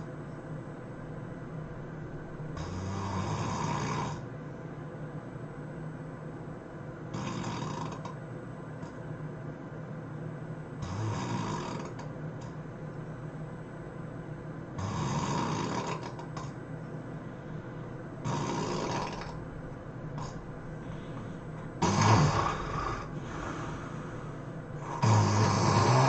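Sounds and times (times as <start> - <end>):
person snoring heavily: 2.6 - 4.3, 7.1 - 8.2, 10.8 - 12.0, 14.8 - 16.5, 18.2 - 19.4, 21.8 - 26.0.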